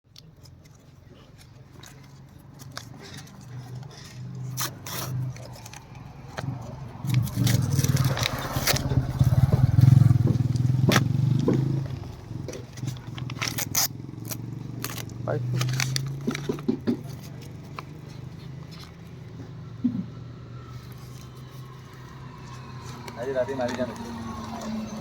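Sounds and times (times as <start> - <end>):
packaging clicks and crinkles: 0.1 - 9.8, 10.4 - 19.4.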